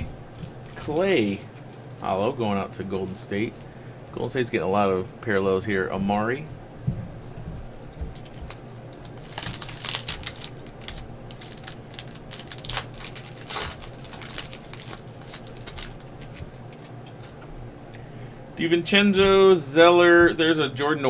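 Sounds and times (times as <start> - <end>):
foil wrapper crinkling: 0.0 - 2.4, 8.1 - 17.3
cards rustling: 0.0 - 4.3, 8.1 - 17.4.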